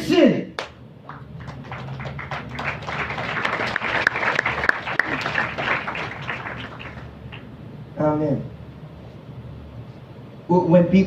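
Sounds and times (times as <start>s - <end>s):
audience applauding: 0.6s - 7.5s.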